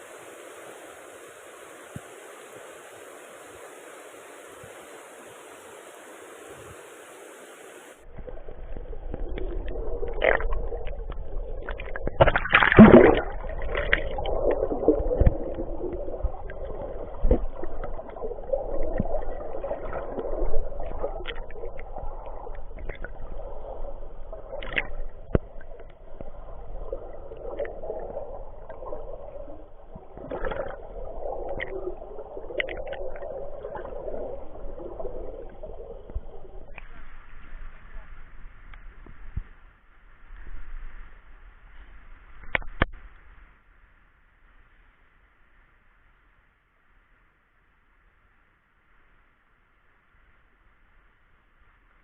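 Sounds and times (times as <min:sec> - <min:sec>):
steady hiss: 0:00.0 - 0:12.0, 0:13.2 - 0:42.4
water sloshing and gurgling: 0:07.9 - 0:39.5
strong splash: 0:08.1 - 0:36.8.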